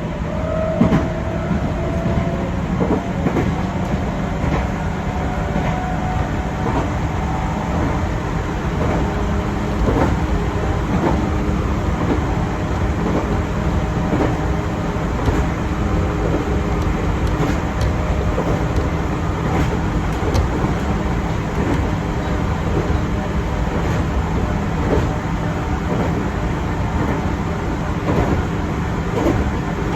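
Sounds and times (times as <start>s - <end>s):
train wheels rumbling: 0.0s - 29.9s
wheels clicking over rails: 12.9s - 26.3s.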